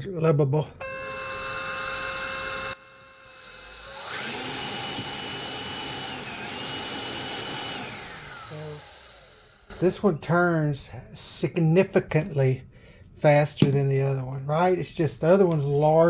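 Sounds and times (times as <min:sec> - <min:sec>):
leaf blower fan whining: 0:00.8 - 0:09.7.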